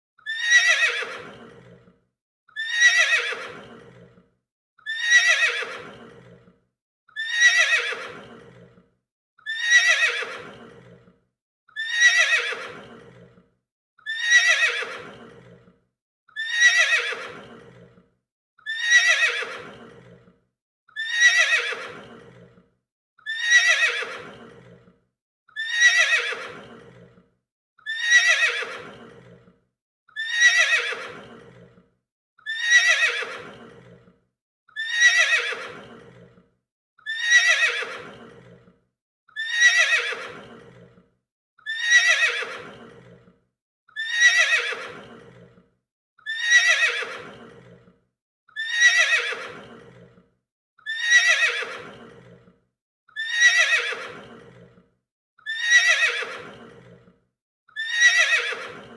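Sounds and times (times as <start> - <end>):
horse neighing: 2.6 - 4.1, 4.9 - 6.5, 7.2 - 8.7, 9.5 - 11.1, 11.8 - 13.3, 16.4 - 17.9, 18.7 - 20.3, 21.0 - 22.5, 23.3 - 24.8, 25.6 - 27.1, 27.9 - 29.4, 30.2 - 31.7, 32.5 - 34.0, 34.8 - 36.2, 37.1 - 38.6, 39.4 - 40.8, 44.0 - 45.4, 48.6 - 50.0, 51.0 - 52.4, 53.2 - 54.6, 55.5 - 57.0, 57.8 - 58.8.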